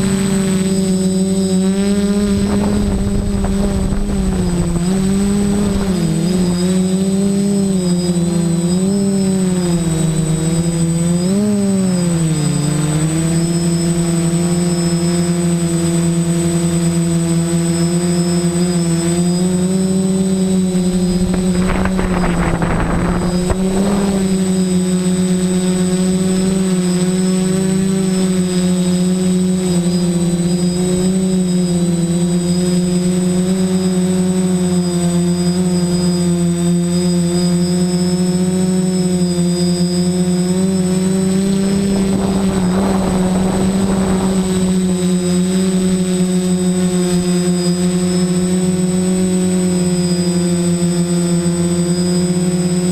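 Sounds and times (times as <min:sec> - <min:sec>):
quadcopter propellers buzzing: 0:00.0 - 0:52.9
thin high whine: 0:00.0 - 0:52.9
rough rushing burst: 0:01.9 - 0:06.8, 0:20.6 - 0:24.6, 0:41.0 - 0:45.8.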